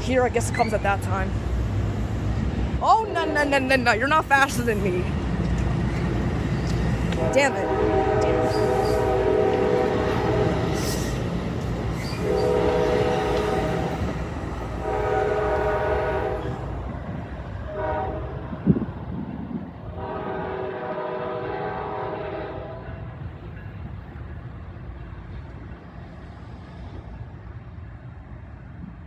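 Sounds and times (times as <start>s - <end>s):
low rumble of moving train: 0.0s - 29.0s
train horn blasts: 7.1s - 11.2s, 12.1s - 14.1s, 14.7s - 16.8s, 17.6s - 18.9s, 19.9s - 23.1s.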